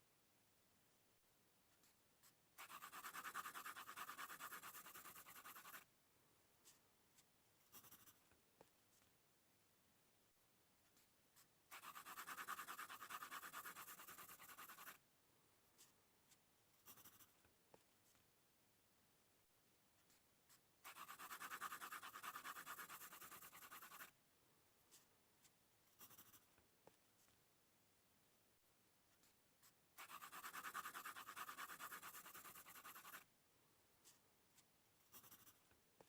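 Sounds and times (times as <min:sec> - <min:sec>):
pencil scratching on paper: 0:01.7 - 0:05.9, 0:06.5 - 0:09.1, 0:10.8 - 0:15.0, 0:15.6 - 0:18.2, 0:20.0 - 0:24.2, 0:24.8 - 0:27.4, 0:29.1 - 0:33.3, 0:33.9 - 0:35.8.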